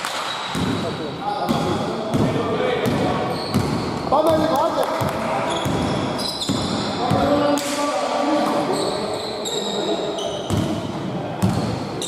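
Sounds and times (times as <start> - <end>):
players' voices echoing: 0.0 - 12.0
sneakers squeaking: 0.2 - 7.6, 8.5 - 12.0
basketball bouncing on floor: 1.5 - 7.4, 10.5 - 10.8, 11.4 - 11.8.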